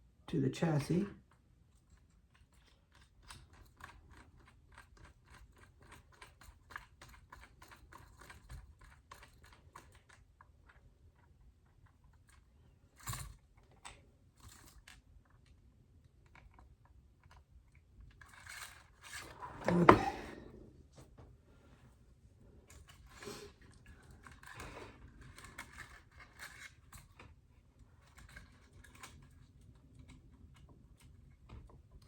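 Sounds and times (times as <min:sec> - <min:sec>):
plastic parts clicking and knocking: 0:22.7 - 0:32.0.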